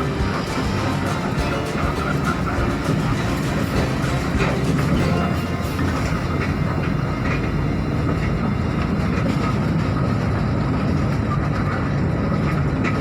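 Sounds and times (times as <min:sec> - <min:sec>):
bus engine and road rumble: 0:00.0 - 0:13.0.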